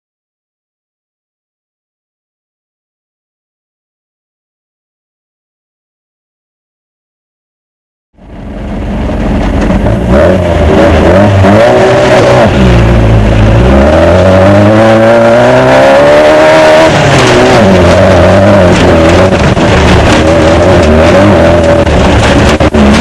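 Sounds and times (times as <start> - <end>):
race car engine running hard: 8.2 - 23.0.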